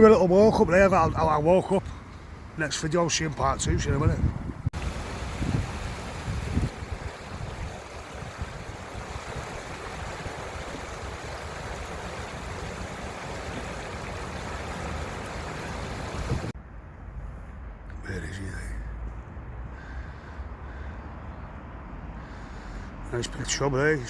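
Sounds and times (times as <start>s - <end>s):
river water flowing: 4.8s - 16.6s.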